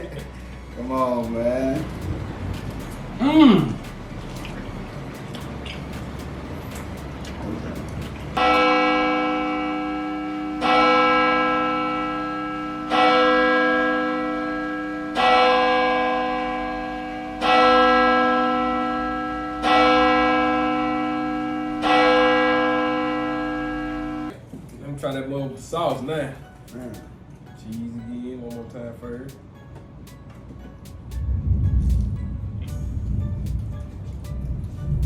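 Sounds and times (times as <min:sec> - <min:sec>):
heavy bell tolling: 0:08.4 - 0:24.3.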